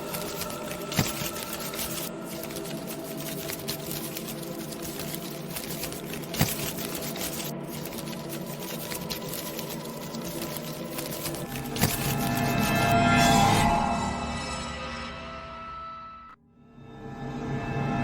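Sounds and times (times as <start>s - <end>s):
dense crackling and rattling: 0.0s - 13.6s.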